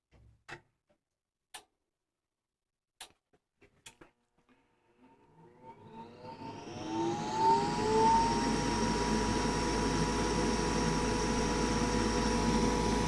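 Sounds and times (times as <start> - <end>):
furnace inducer motor whirring: 5.0 - 13.0.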